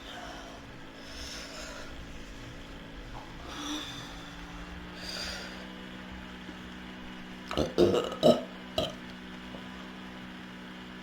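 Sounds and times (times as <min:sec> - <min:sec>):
person breathing: 0:00.0 - 0:05.9.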